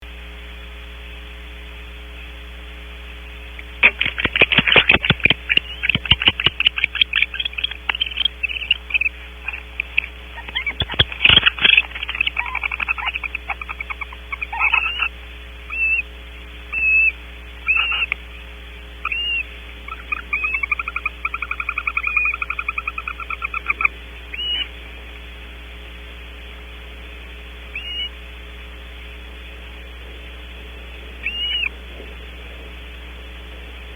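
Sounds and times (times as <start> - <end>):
steady electrical hum: 0.0 - 33.9
owls twittering calls: 3.5 - 33.9
short owl chirps: 3.6 - 25.2, 27.0 - 29.6, 30.8 - 32.3.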